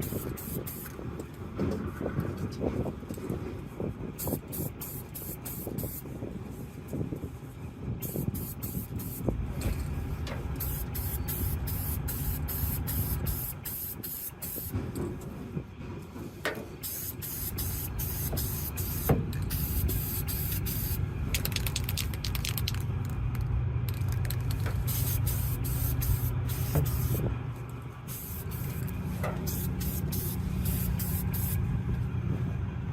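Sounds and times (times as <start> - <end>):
spray paint hissing bursts: 0.0 - 1.0, 4.2 - 6.1, 8.0 - 9.3, 10.5 - 14.8, 16.8 - 22.7, 24.5 - 27.3, 28.1 - 31.6
low rumble of vehicles: 0.0 - 32.9.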